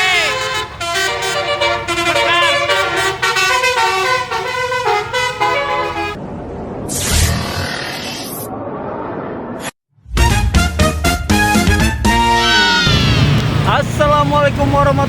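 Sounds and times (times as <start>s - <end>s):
musical bus air horn tune: 0.0s - 6.2s
road noise: 0.0s - 9.8s, 12.4s - 15.0s.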